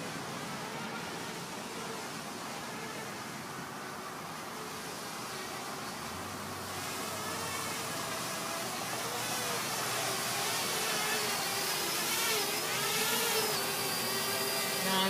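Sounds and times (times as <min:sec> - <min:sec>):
drone propellers buzzing: 0:00.0 - 0:15.0.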